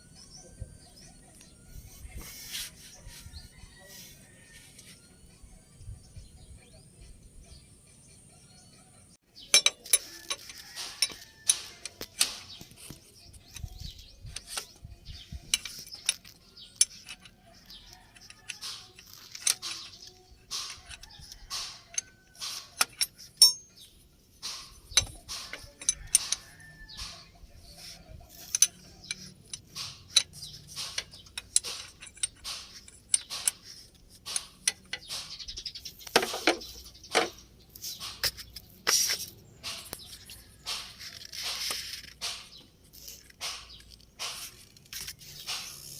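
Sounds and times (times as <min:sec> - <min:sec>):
hand tools clanking on metal: 0:09.4 - 0:42.6.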